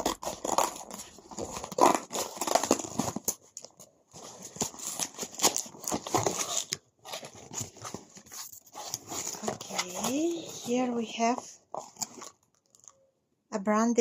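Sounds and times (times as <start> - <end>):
scissors cutting cardboard: 0.0 - 11.0
cardboard box being handled: 0.0 - 12.3.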